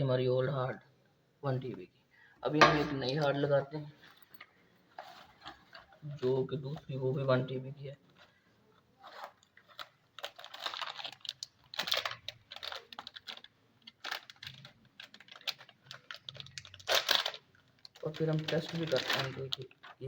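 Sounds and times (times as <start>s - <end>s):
hardware parts handled by hand: 4.0s - 7.0s.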